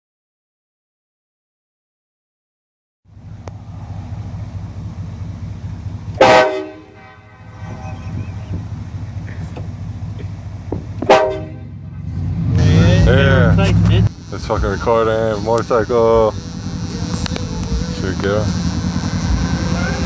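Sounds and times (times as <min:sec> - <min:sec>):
vehicle rumble: 0:03.1 - 0:20.0
train horn blasts: 0:06.1 - 0:08.5, 0:11.0 - 0:11.8.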